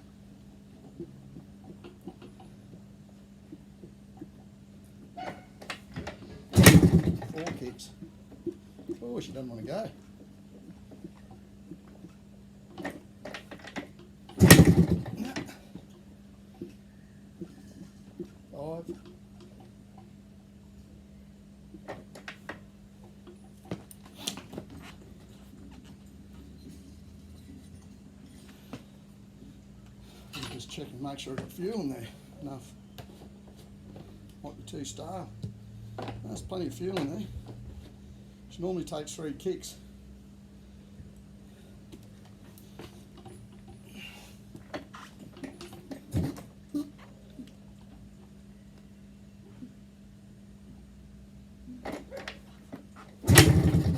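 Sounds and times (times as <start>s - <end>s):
steady low hum: 0.0s - 53.9s.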